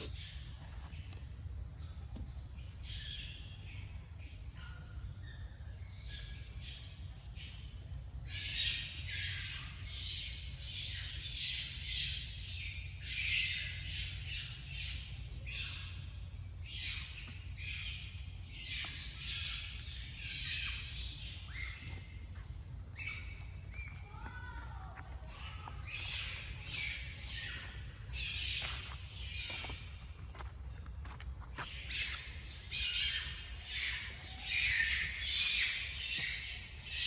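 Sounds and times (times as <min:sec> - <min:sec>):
high-pitched animal calls and squeaks: 0:25.3 - 0:29.7, 0:31.6 - 0:37.0.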